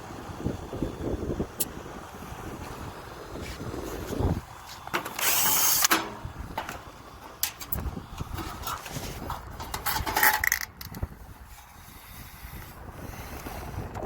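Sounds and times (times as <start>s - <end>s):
metallic clicks and scrapes: 4.9s - 11.1s.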